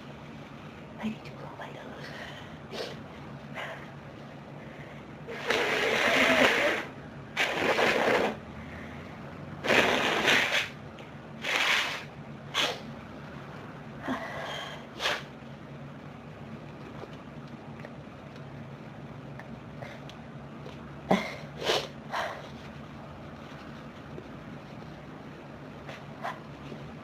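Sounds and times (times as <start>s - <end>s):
person blowing nose: 5.3s - 8.4s, 9.6s - 10.8s, 11.4s - 12.9s, 14.9s - 15.3s, 21.1s - 22.5s.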